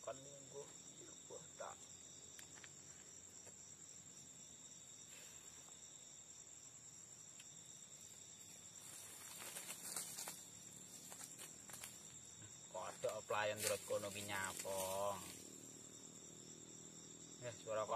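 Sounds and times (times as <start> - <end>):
crickets trilling: 0.0 - 17.9
rustle with clicks: 9.0 - 12.1.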